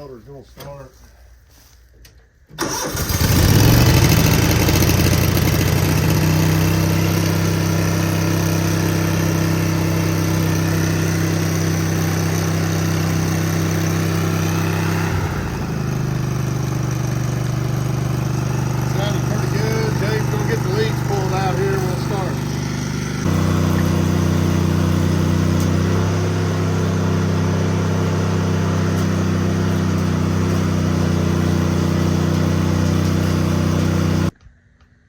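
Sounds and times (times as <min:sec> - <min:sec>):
welder engine starting and running: 0:02.6 - 0:34.4.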